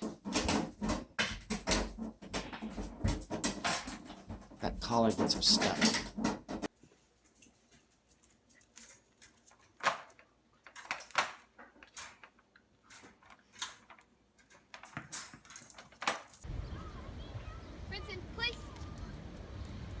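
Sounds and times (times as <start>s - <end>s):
dog collar tags jingling: 8.1s - 11.2s, 13.1s - 16.4s.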